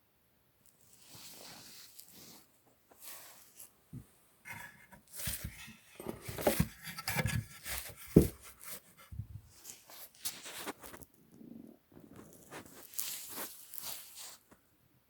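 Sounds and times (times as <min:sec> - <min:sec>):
rubbing and scraping: 0:04.5 - 0:11.0.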